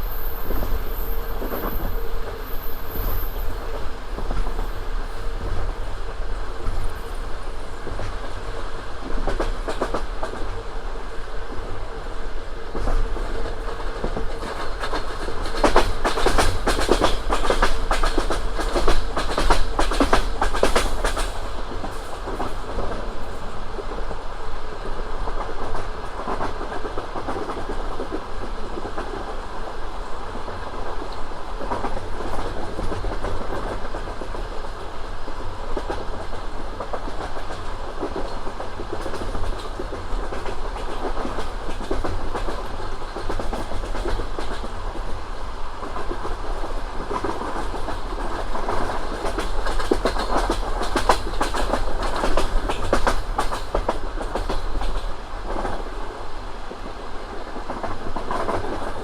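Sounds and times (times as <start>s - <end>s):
train rumble: 0.0s - 59.0s
train wheels clattering over joints: 12.7s - 23.1s, 35.7s - 45.2s, 45.8s - 55.9s.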